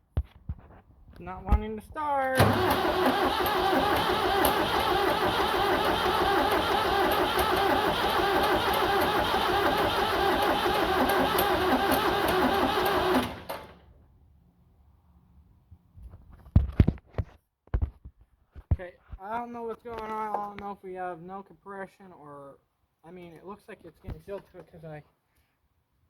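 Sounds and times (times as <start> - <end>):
starter cranking diesel engine: 2.4 - 13.9.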